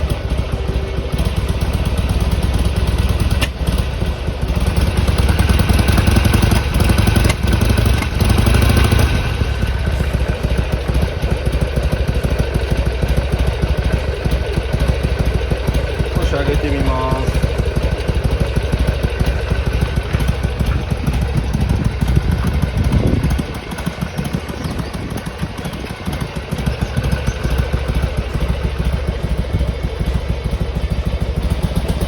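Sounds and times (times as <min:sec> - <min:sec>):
motorcycle engine idling: 0:00.0 - 0:32.0.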